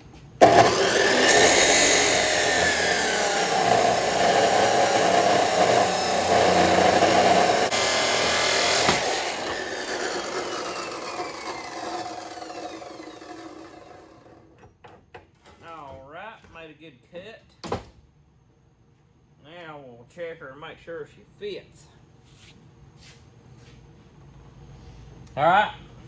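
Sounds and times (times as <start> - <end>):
chop saw grinding through steel: 0.4 - 14.5
saw blade spinning down: 0.4 - 14.5.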